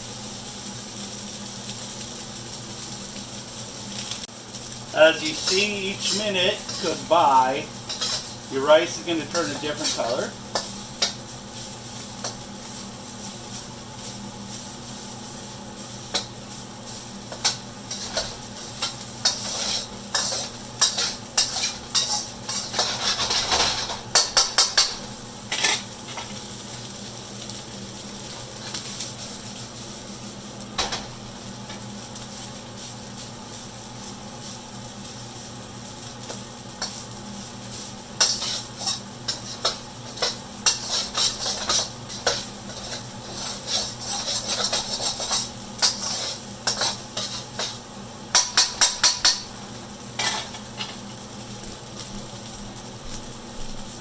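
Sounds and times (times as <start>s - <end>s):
rice sizzling in hot oil: 0.0s - 54.0s
utensil scraping pan: 7.9s - 8.4s, 17.3s - 26.3s, 38.2s - 47.8s.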